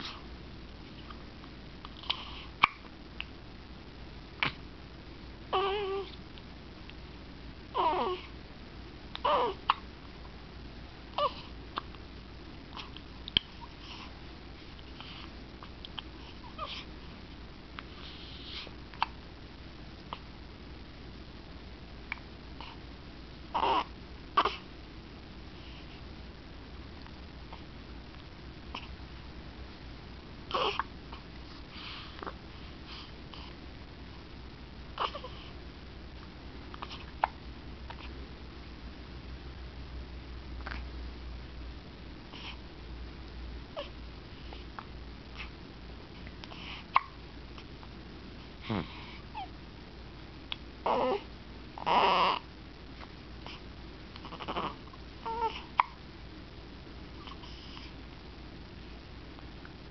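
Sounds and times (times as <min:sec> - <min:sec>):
hiccups: 0:02.0 - 0:02.9, 0:46.9 - 0:47.2, 0:55.8 - 0:56.0.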